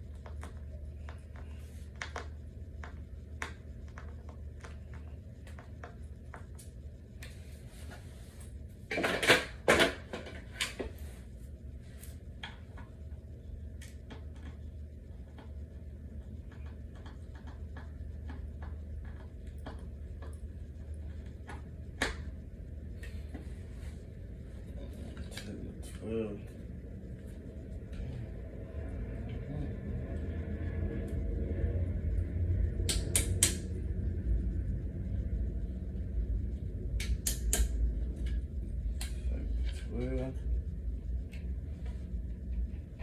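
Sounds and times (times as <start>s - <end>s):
low hum: 0.0s - 43.0s
steady low rumble: 0.0s - 43.0s.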